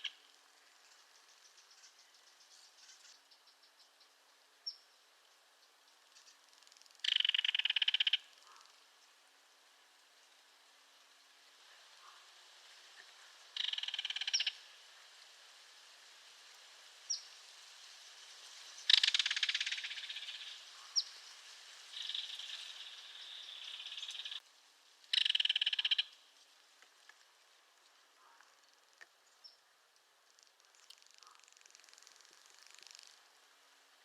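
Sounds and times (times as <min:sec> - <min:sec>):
kingfisher rattle call: 0:07.0 - 0:08.7, 0:13.6 - 0:14.6, 0:18.9 - 0:20.6, 0:21.9 - 0:24.4, 0:25.1 - 0:26.2
high bird chirps: 0:22.0 - 0:24.4, 0:25.1 - 0:26.2
high bird trill: 0:22.0 - 0:24.4, 0:25.1 - 0:26.2.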